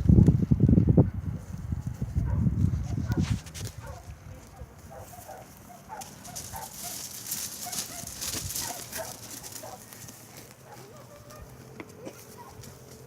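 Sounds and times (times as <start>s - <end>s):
rustling clicking hiss: 1.6s - 13.0s
farm animals calling: 3.8s - 13.0s.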